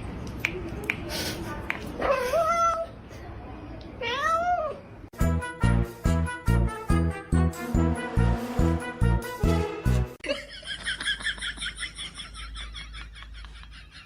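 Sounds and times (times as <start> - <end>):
cat meowing: 4.0 - 4.8
music with a steady beat: 5.2 - 10.2.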